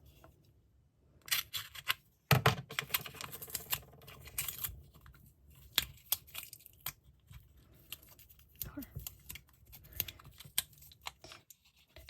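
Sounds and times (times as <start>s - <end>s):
package wrapping crinkles and clicks: 2.7s - 12.0s.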